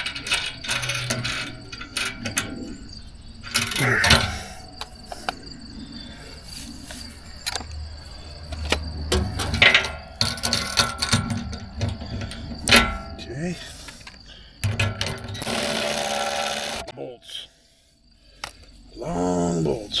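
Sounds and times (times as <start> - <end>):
metal hardware clinking: 0.0 - 5.5, 8.5 - 16.9
rustling: 0.0 - 16.9.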